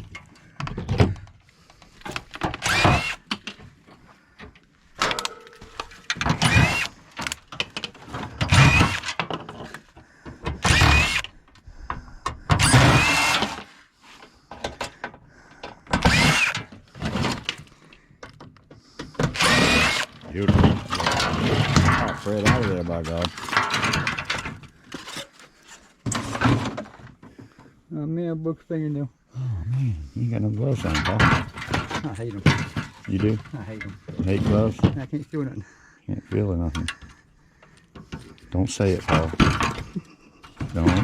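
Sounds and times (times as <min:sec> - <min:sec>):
metal parts clanking and scraping: 0:04.4 - 0:13.7, 0:14.5 - 0:18.5, 0:19.1 - 0:27.3, 0:30.7 - 0:35.2, 0:36.8 - 0:41.0.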